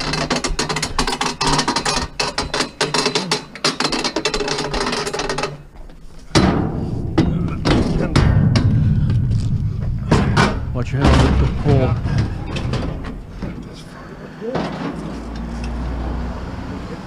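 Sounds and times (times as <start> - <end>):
metal parts rattling and clanking: 0.0 - 15.7
sharp knocks: 6.3 - 13.6
low rumble: 6.4 - 13.8.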